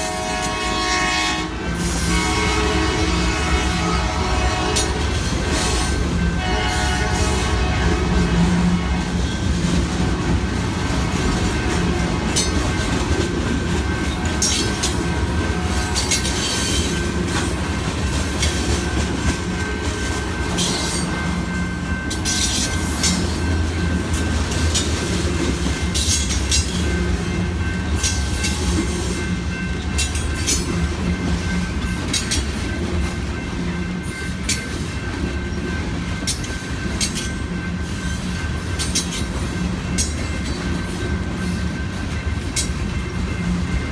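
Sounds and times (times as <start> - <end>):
freight train rumbling past: 0.0 - 43.9
wheels clicking over rail joints: 9.2 - 28.9, 29.5 - 33.3, 34.3 - 43.9.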